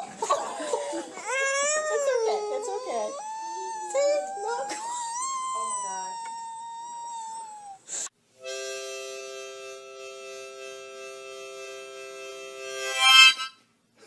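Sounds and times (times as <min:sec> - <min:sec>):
harmonica-like reedy chord: 0:08.4 - 0:13.7.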